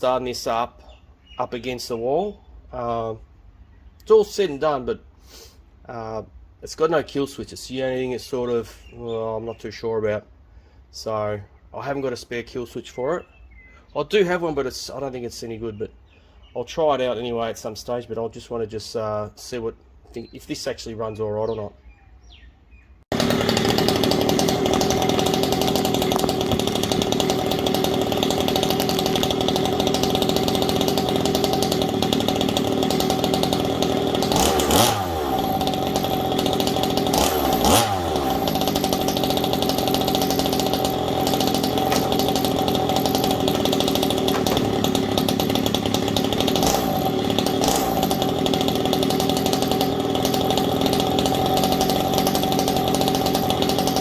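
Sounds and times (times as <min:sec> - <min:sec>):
small two-stroke engine idling: 0:23.1 - 0:54.0.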